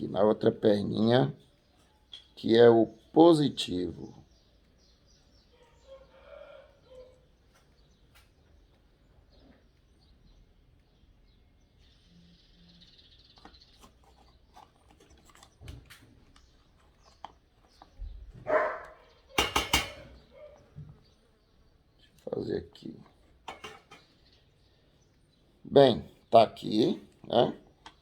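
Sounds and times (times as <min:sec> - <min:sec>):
dog barking: 0:18.4 - 0:19.1, 0:20.3 - 0:20.7.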